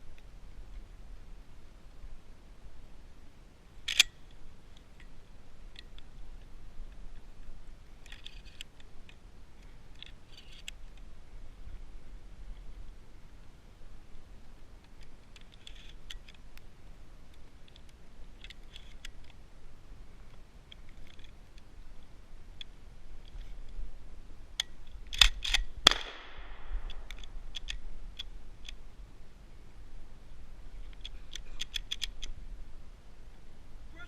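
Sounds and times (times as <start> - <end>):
shells being handled: 6.9 - 11.1, 14.8 - 16.5, 17.3 - 19.4, 24.6 - 28.8
shotgun action clacking: 25.2 - 27.8.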